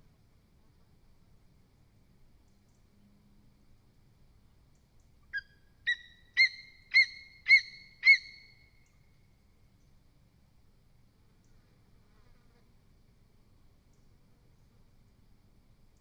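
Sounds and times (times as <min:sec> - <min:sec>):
eagle yelping calls: 0:05.3 - 0:08.6.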